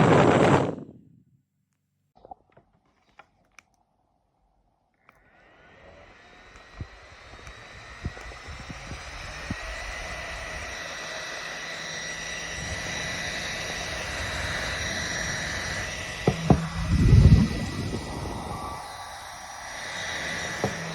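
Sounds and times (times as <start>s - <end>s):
fan motor whine and air rush: 0.0s - 1.0s, 5.2s - 20.9s.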